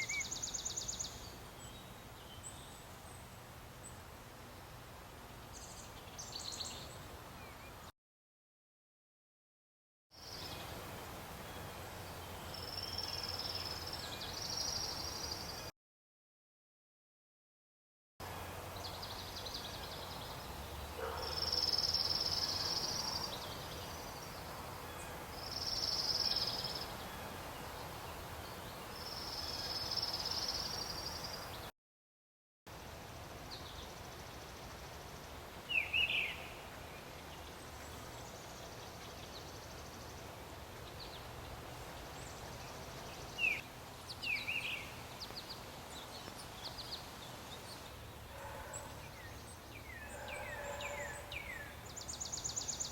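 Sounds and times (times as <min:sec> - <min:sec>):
bird chirps: 0:00.0 - 0:03.3
steady outdoor background: 0:00.0 - 0:07.9, 0:10.1 - 0:15.7, 0:18.2 - 0:31.7, 0:32.7 - 0:52.9.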